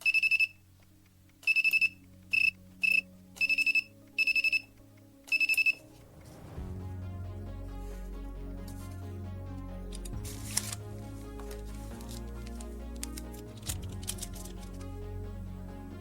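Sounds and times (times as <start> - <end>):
electronic beeper beeping: 0.0 - 0.6, 1.5 - 4.7, 5.3 - 5.8
music: 0.0 - 16.0.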